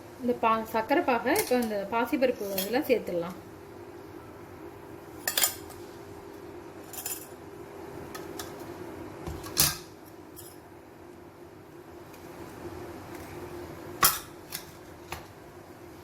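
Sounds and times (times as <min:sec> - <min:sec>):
steady low hum: 0:00.0 - 0:16.0
metal utensils clinking: 0:02.4 - 0:02.8, 0:05.2 - 0:05.8, 0:06.9 - 0:07.4.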